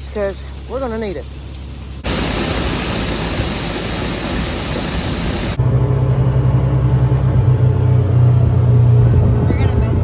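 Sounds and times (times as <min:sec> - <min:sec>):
engine running: 0:01.3 - 0:10.0
loud steady hiss: 0:02.0 - 0:05.6.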